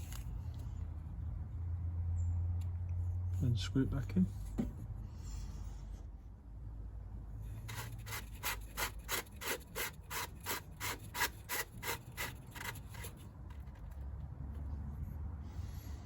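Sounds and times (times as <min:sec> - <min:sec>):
fitting rubbing strokes: 0:07.5 - 0:14.0.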